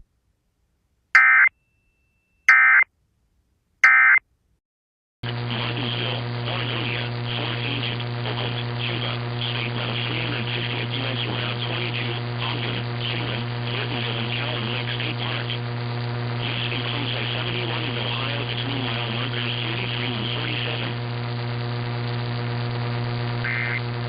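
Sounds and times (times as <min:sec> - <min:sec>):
electrical hum: 0:05.2 - 0:24.0
static hiss: 0:05.3 - 0:24.0.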